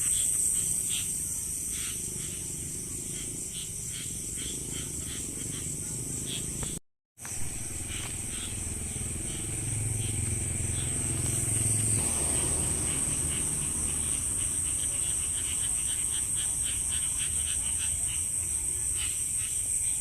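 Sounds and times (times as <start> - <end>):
high-pitched insect trill: 0.0 - 6.6, 7.2 - 20.0
rapidly repeated frog calls: 0.0 - 20.0
low hum: 7.2 - 17.2.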